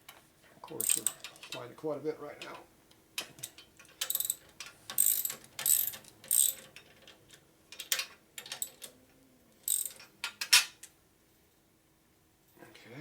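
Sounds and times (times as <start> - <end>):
ratchet wrench ratcheting: 0.8 - 1.2, 5.0 - 6.6, 9.7 - 10.0.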